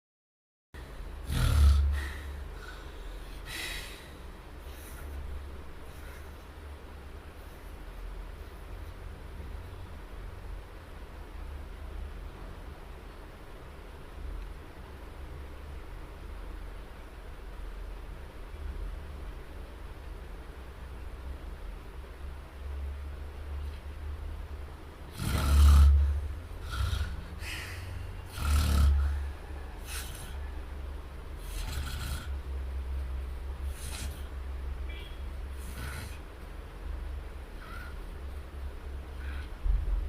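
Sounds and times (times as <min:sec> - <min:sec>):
steady hiss: 0:00.8 - 0:40.0
steady low hum: 0:00.8 - 0:40.0
person snoring: 0:01.2 - 0:02.8, 0:25.1 - 0:30.4, 0:31.4 - 0:32.4, 0:35.6 - 0:36.2
breathy sounds: 0:01.2 - 0:05.2, 0:25.1 - 0:30.6, 0:35.5 - 0:36.3.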